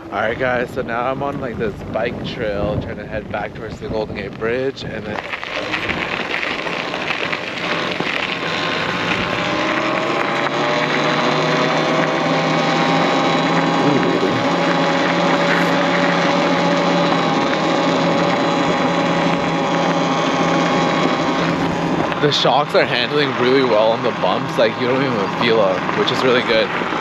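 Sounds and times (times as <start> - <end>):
tyre and wind noise: 0.0 - 27.0
electric motor whine: 4.9 - 27.0.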